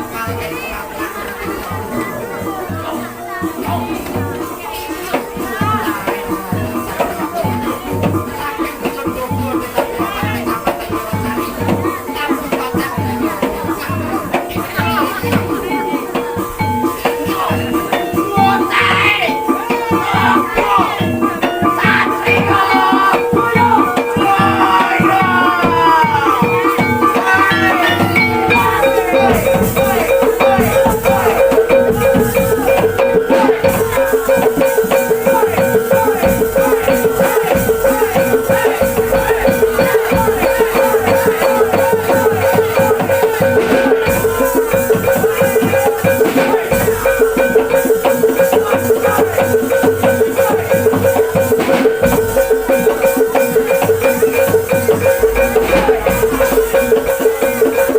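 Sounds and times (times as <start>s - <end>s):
drums: 0.0s - 57.9s
steady held tone: 17.5s - 57.9s.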